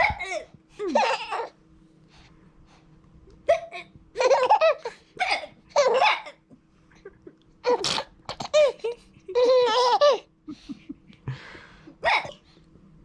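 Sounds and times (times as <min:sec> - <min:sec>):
baby laughing: 0:00.0 - 0:01.5, 0:03.5 - 0:06.4, 0:07.1 - 0:10.3.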